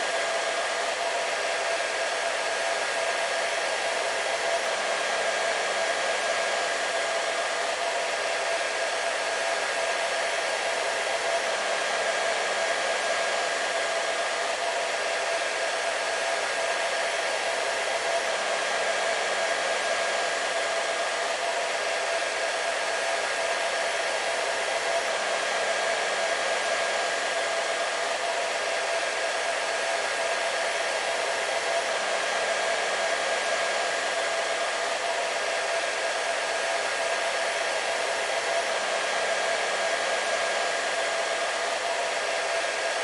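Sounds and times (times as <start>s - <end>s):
hair dryer running: 0.0s - 43.0s.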